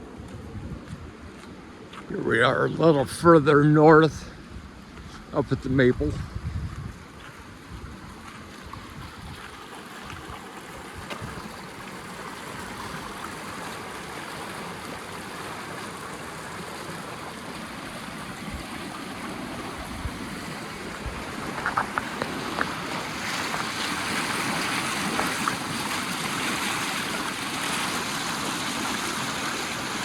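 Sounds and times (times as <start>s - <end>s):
flooded river rushing: 8.4s - 30.0s.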